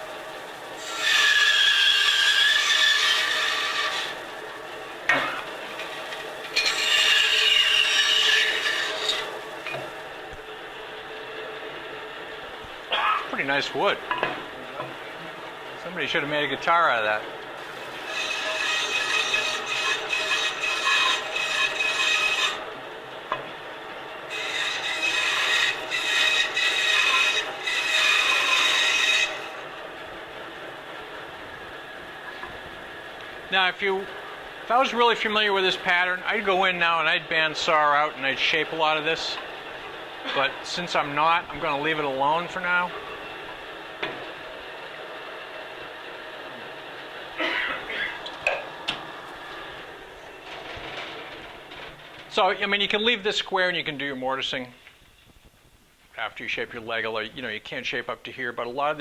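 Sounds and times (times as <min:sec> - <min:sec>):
bandsaw cutting wood: 0:00.7 - 0:09.9, 0:16.9 - 0:22.6, 0:24.3 - 0:29.8, 0:33.5 - 0:43.2
bandsaw running free: 0:00.8 - 0:04.4.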